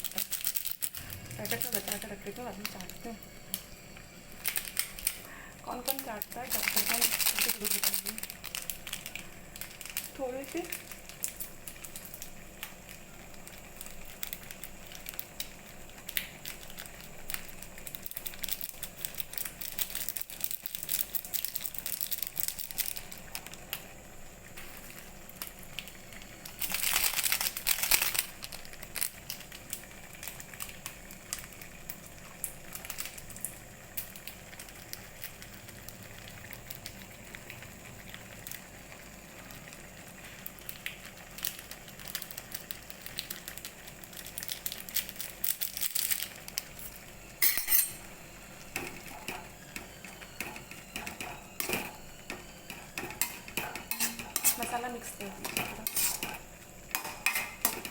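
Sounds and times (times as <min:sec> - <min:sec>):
cooking hiss: 0:00.0 - 0:57.9
stirring clicks and scrapes: 0:48.7 - 0:57.9.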